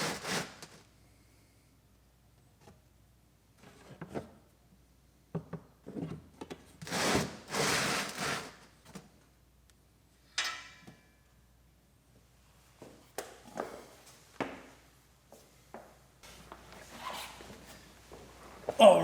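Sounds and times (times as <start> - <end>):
loud scraping rubs: 0.0 - 0.8, 6.9 - 8.6
knocks and clatter of hand work: 5.3 - 6.6.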